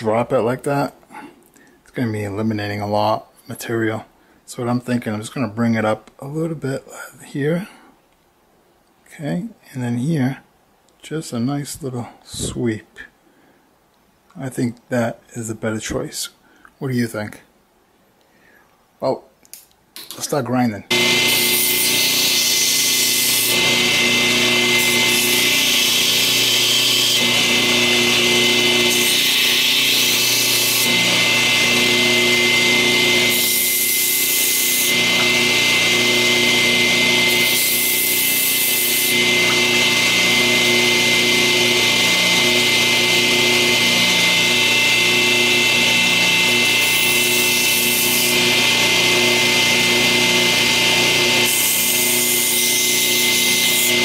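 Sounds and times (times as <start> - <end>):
grinder grinding steel blade: 20.1 - 54.0
grinder motor hum: 20.9 - 54.0.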